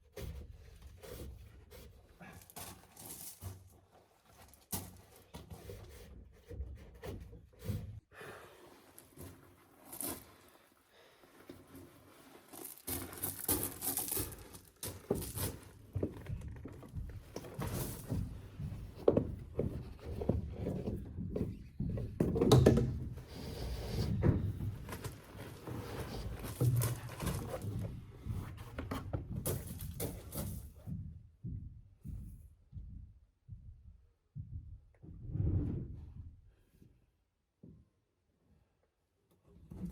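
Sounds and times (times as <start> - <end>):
cable knocking and rustling: 12.8 - 23.3, 23.9 - 33.0.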